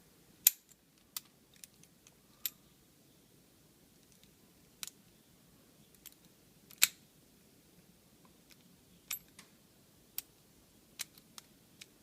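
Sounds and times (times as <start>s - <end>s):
padlock metal clicks: 0.4s - 2.6s, 6.0s - 7.0s, 11.0s - 12.0s.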